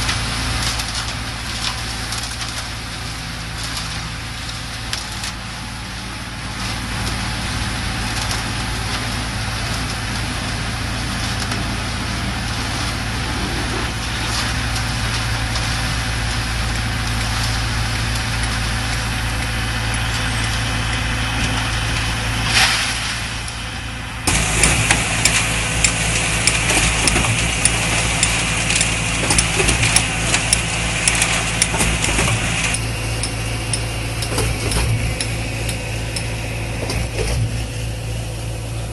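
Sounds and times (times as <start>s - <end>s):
diesel engine of concrete mixer: 0.0s - 38.9s
dense rattling clatter: 24.2s - 32.8s.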